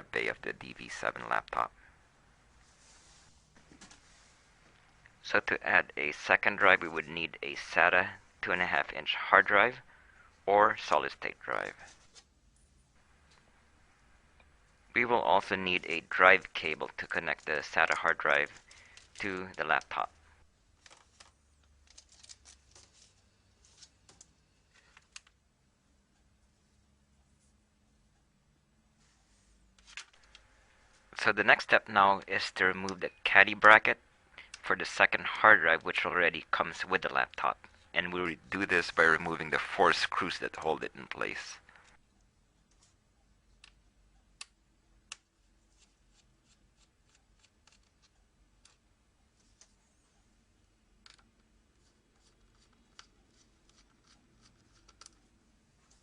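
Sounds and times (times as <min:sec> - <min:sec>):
faint clicks and handling noise: 0:02.6 - 0:05.2, 0:15.6 - 0:25.4, 0:29.7 - 0:31.3, 0:34.3 - 0:34.7, 0:41.2 - 0:50.0, 0:50.9 - 0:56.0.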